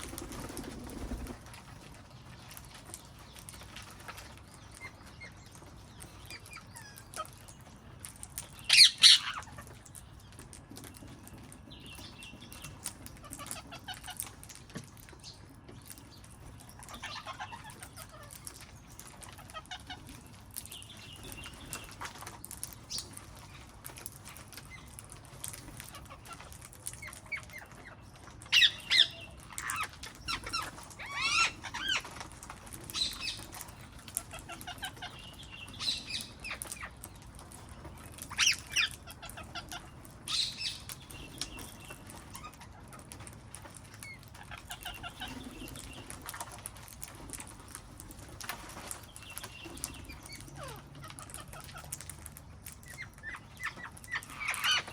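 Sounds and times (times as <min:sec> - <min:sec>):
parrots squawking and chattering: 0:00.0 - 0:11.4, 0:12.0 - 0:54.9.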